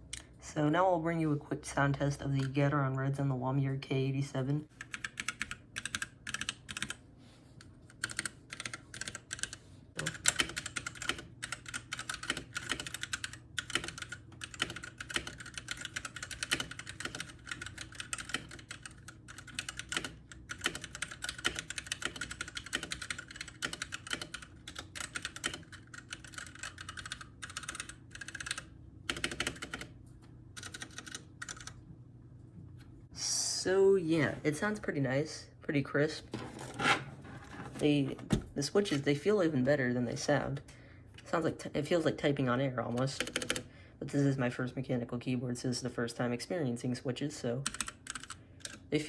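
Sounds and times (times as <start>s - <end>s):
mechanical keyboard typing: 4.8s - 7.0s, 7.9s - 29.9s, 30.6s - 31.8s, 42.9s - 43.7s, 47.6s - 48.8s.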